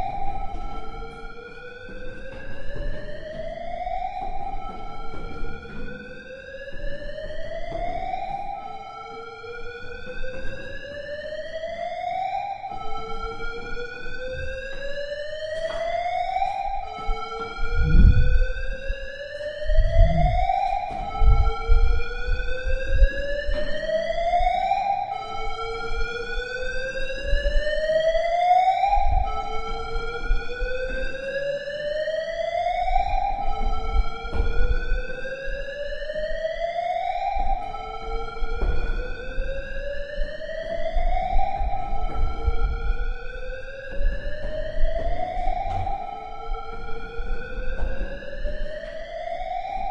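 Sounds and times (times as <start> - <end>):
electronic whooping alarm: 3.3 - 49.9.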